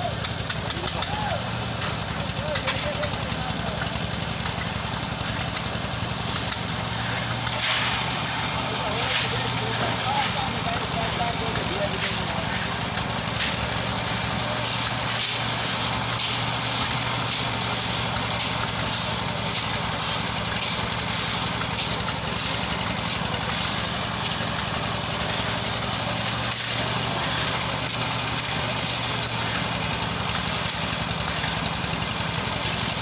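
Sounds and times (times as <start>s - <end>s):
engine running with low hum: 0.0s - 33.0s.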